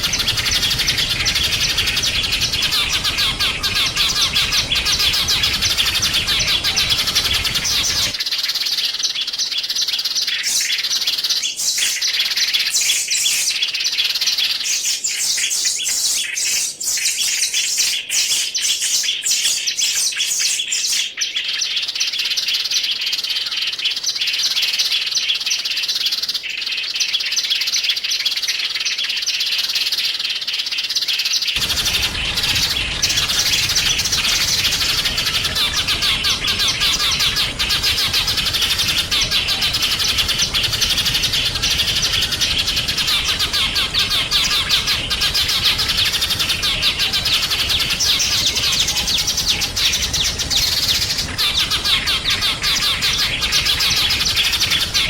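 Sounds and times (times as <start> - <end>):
background hiss: 0.0 - 8.2, 31.6 - 55.0
songbirds chirping: 0.0 - 55.0.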